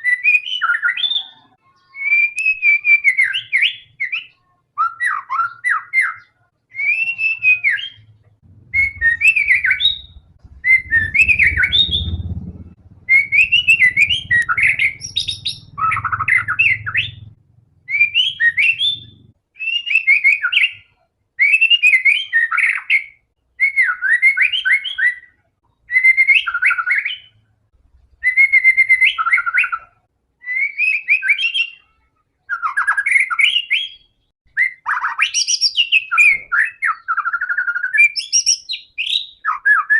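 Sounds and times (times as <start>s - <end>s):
songbird whistling varied phrases: 1.9s - 17.3s, 17.9s - 27.4s
faint low rumble: 7.9s - 19.4s.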